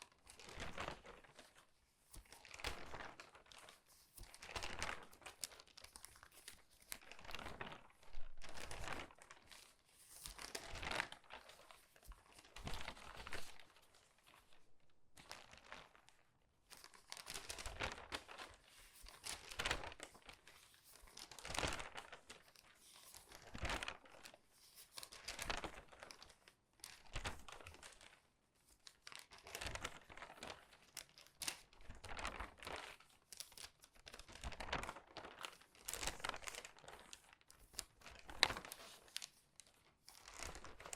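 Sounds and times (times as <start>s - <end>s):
newspaper pages turning: 29.1s - 40.9s.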